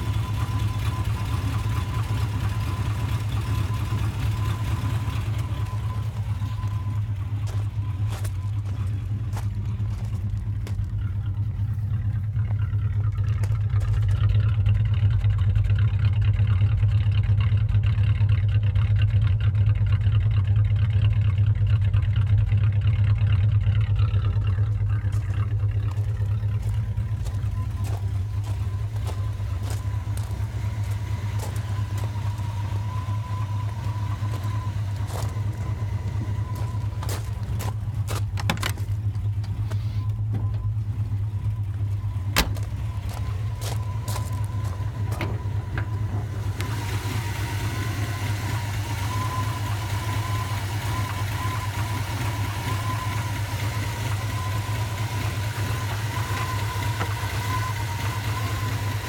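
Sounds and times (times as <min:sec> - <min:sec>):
car engine revving and idling: 0:00.0 - 0:59.0
sharp engine clicks: 0:21.4 - 0:59.0.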